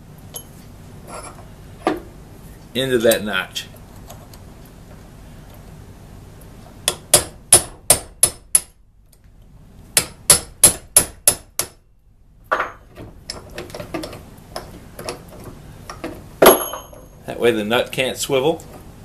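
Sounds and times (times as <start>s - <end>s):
hammer tapping punch on steel: 6.9s - 8.8s, 10.0s - 11.8s.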